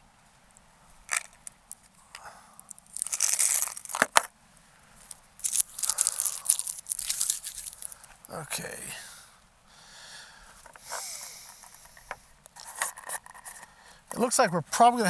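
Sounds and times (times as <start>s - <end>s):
rustling crinkling handling noise: 1.0s - 4.3s, 4.9s - 8.8s, 10.5s - 14.5s.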